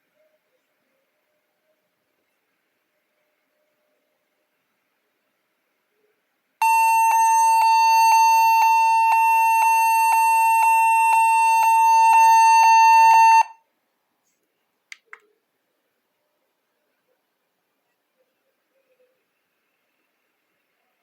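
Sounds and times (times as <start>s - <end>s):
loud steady beep tone: 6.6s - 13.6s.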